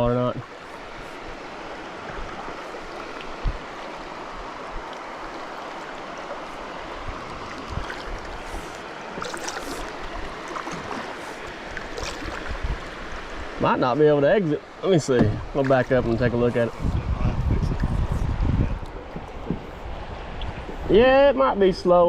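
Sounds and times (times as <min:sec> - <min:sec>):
creek rapids rushing: 0:00.0 - 0:22.0.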